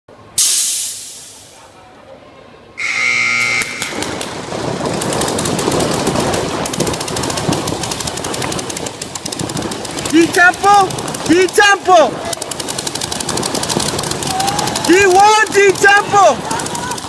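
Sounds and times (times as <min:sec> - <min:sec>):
loud rush of noise: 0:00.1 - 0:01.8
paintball marker fire: 0:00.4 - 0:01.5, 0:03.4 - 0:04.4, 0:05.0 - 0:17.0
horn sounding: 0:02.8 - 0:04.1.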